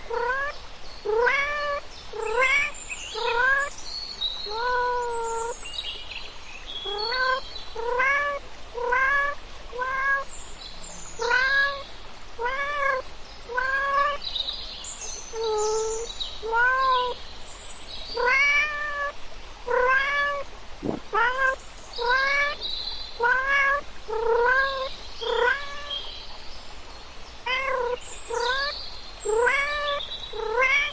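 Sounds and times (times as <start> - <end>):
cat meowing: 0.1 - 3.7, 4.4 - 5.5, 6.8 - 10.2, 11.2 - 11.8, 12.4 - 14.2, 15.3 - 17.2, 18.2 - 19.1, 19.7 - 22.6, 23.2 - 26.0, 27.5 - 30.9.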